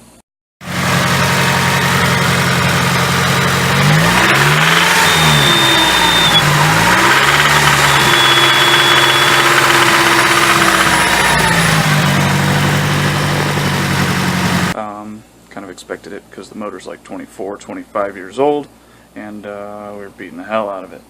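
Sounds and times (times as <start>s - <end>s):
car engine idling and revving: 0.6s - 14.8s.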